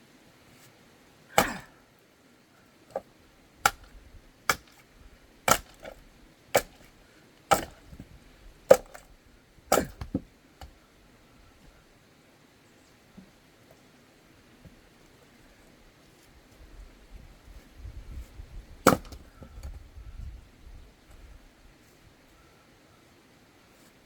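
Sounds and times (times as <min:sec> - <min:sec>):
axe chopping firewood: 0:01.3 - 0:01.8, 0:02.9 - 0:09.1, 0:09.7 - 0:10.8, 0:18.8 - 0:19.8.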